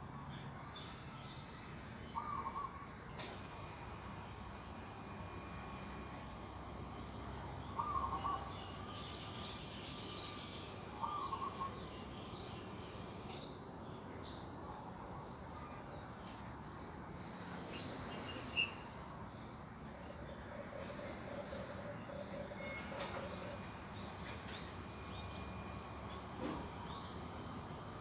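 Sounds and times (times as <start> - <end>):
birds calling: 2.0 - 28.0
steady background hiss: 2.1 - 22.6.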